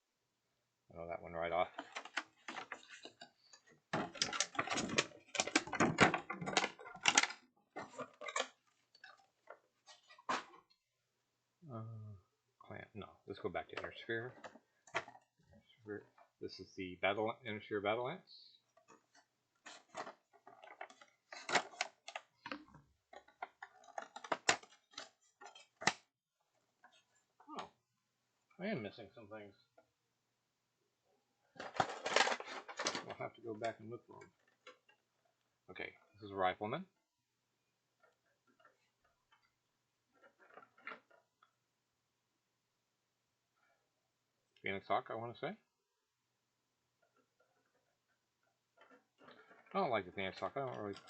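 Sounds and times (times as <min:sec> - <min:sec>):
cards shuffling and rustling: 0:01.7 - 0:10.6, 0:18.9 - 0:26.0, 0:31.6 - 0:33.7, 0:48.8 - 0:51.0.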